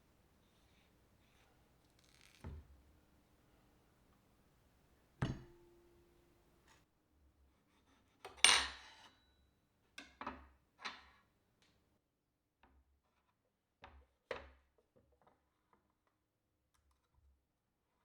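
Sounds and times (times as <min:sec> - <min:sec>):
dishes knocking and clinking: 0:05.2 - 0:06.2.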